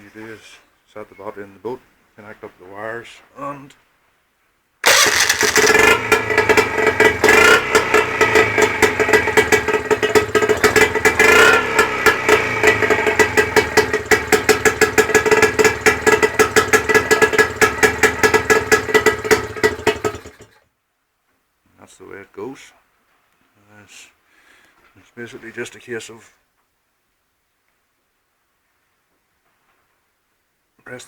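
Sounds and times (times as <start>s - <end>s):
outboard engine running: 4.8s - 20.6s.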